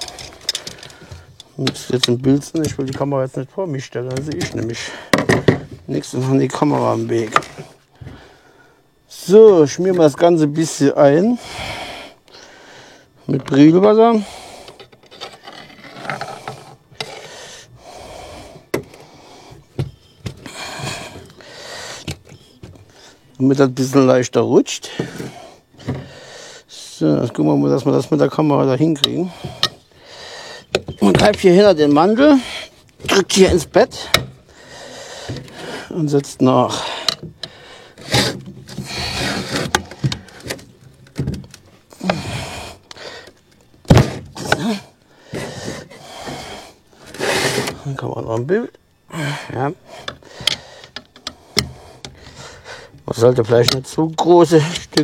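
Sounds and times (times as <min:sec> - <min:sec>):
heavy thunk: 0:43.9 - 0:44.6.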